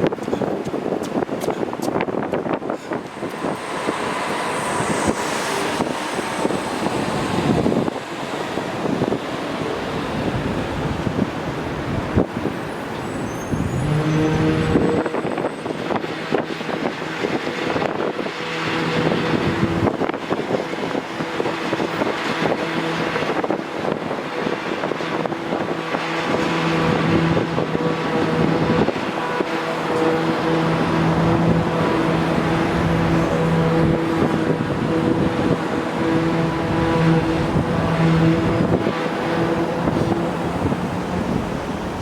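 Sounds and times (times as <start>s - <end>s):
engine drone: 0.8s - 42.0s
wash of noise: 1.2s - 42.0s.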